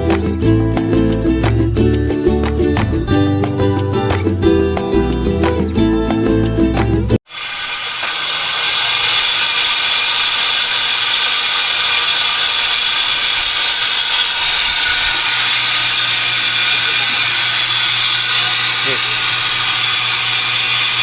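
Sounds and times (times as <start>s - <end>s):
sewing machine motor whining: 8.3s - 21.0s.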